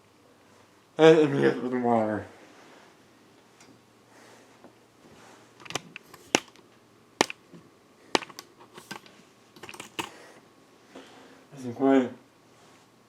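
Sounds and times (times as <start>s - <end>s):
keyboard key clicks: 5.6s - 6.6s, 8.2s - 9.0s, 9.6s - 10.1s.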